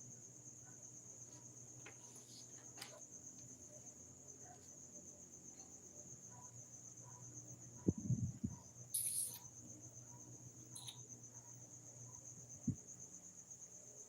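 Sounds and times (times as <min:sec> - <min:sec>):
insect trilling: 0:08.9 - 0:09.6, 0:10.7 - 0:11.4.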